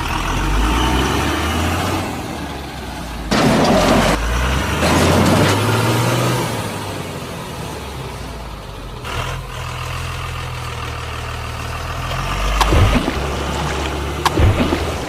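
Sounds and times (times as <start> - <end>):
heavy vehicle engine humming: 5.6 - 15.0
hissing bursts: 12.4 - 15.0.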